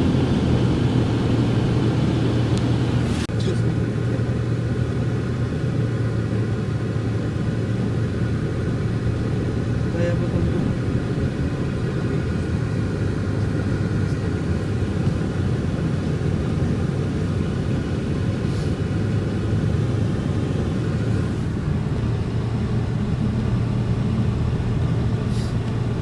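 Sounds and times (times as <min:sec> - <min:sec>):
car engine and tyres rumbling: 0:00.0 - 0:26.0.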